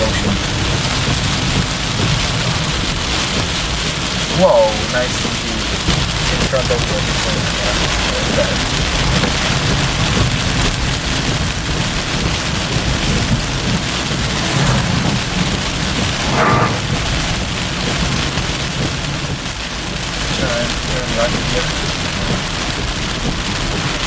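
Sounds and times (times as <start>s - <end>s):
low rumble: 0.0s - 3.9s, 12.2s - 19.6s
heavy rain on car: 0.0s - 24.0s.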